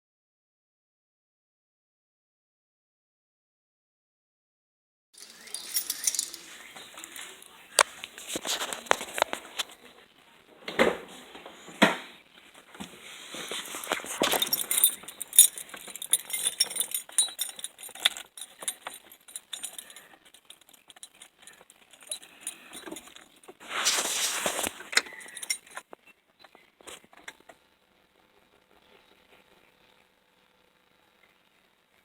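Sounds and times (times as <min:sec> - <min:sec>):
keys jangling on key ring: 0:05.2 - 0:07.2, 0:13.7 - 0:23.4, 0:24.6 - 0:25.8.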